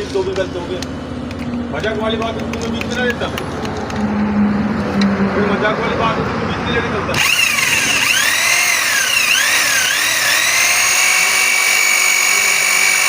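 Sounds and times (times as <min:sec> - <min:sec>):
electric power tool whining: 0:07.1 - 0:13.0.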